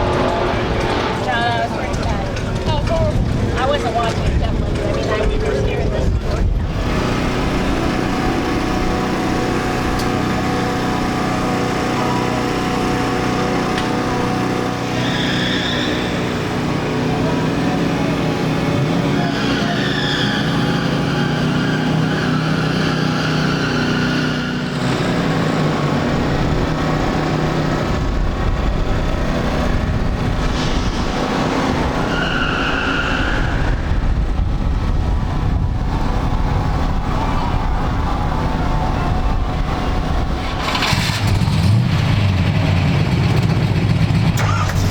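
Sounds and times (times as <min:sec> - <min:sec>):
car engine running loud: 0:00.0 - 0:44.9
high squeal: 0:14.2 - 0:16.7, 0:18.9 - 0:25.4, 0:30.2 - 0:34.6
car engine idling: 0:33.9 - 0:44.9.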